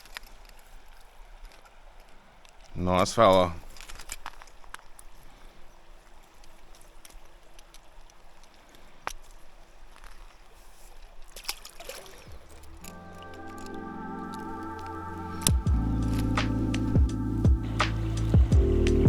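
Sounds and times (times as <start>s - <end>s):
water trickling and lapping: 0.0s - 18.5s.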